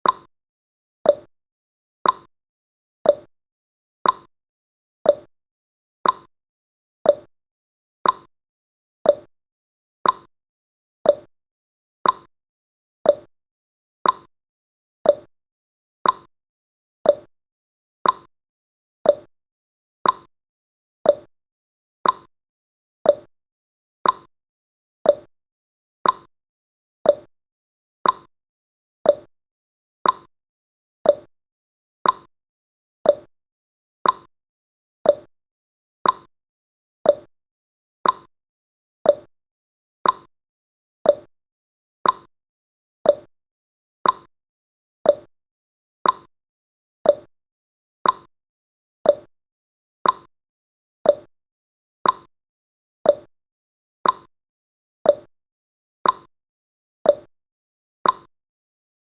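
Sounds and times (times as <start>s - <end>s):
clock ticking: 38.0s - 38.3s, 42.0s - 42.3s, 44.0s - 44.3s.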